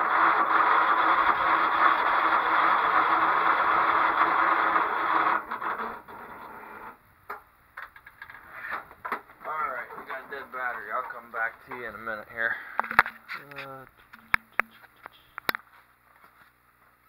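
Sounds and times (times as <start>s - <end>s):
lawn mower starter cranking: 0.0s - 6.5s
person speaking: 9.4s - 15.5s
clicks: 12.8s - 15.7s.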